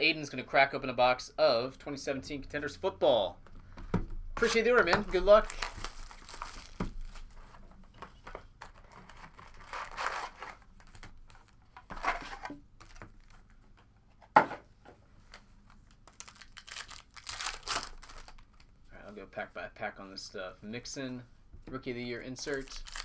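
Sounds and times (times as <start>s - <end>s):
plastic wrapping crinkling and tearing: 4.4s - 7.6s, 8.6s - 13.4s, 15.7s - 18.7s, 22.4s - 23.0s.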